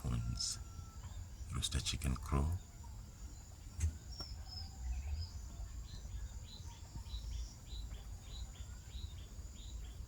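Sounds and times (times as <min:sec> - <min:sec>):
small birds chirping: 0:00.0 - 0:10.0.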